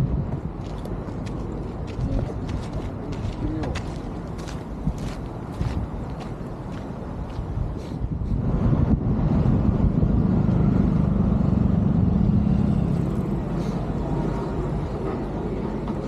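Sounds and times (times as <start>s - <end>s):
motor vehicle passing by: 7.8s - 16.0s.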